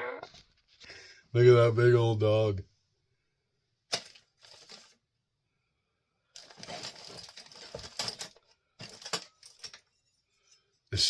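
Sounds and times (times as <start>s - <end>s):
small hard pieces clattering: 3.9s - 5.0s, 6.4s - 9.9s.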